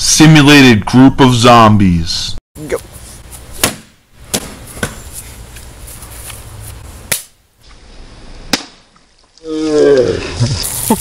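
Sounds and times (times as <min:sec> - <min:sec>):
person speaking: 0:02.6 - 0:03.3.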